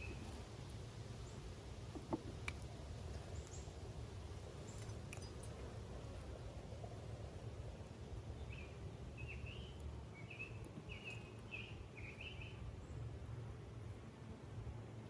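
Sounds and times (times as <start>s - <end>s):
bird chirping: 0.0s - 0.4s, 8.3s - 13.1s.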